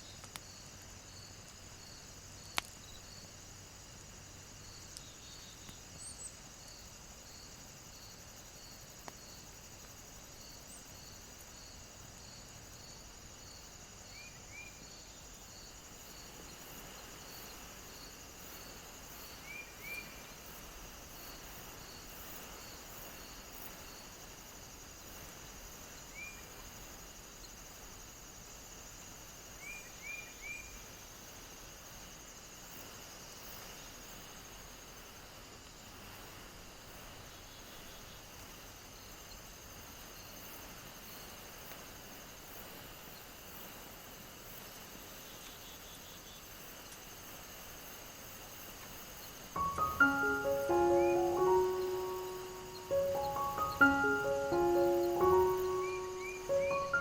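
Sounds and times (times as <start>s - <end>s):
insects trilling: 0.0s - 35.9s, 36.8s - 57.0s
pulsed insect chirp: 49.5s - 57.0s
short rising chirps: 49.6s - 57.0s.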